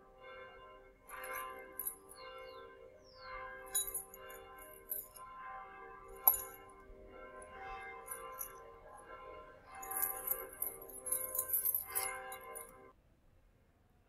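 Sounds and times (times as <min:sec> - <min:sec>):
soft music with chiming notes: 0:01.1 - 0:05.2.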